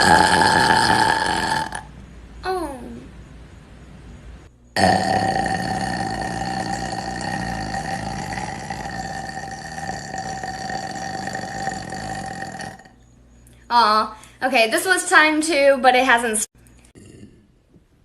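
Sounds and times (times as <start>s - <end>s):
woman burping: 0.0s - 1.9s, 4.8s - 12.9s.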